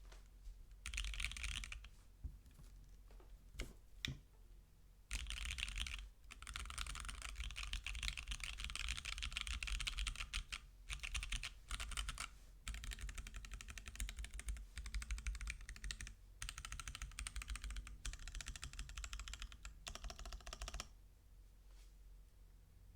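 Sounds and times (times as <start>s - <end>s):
fast typing on keyboard: 0.8s - 1.9s, 5.1s - 20.9s.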